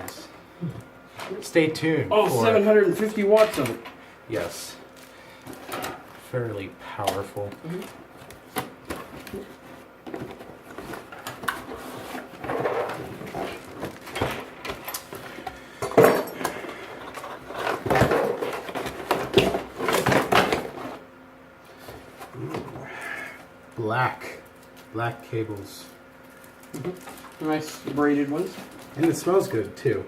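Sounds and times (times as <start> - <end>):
packaging rustling and scraping: 7.1 - 15.5, 16.6 - 21.0, 26.3 - 29.6.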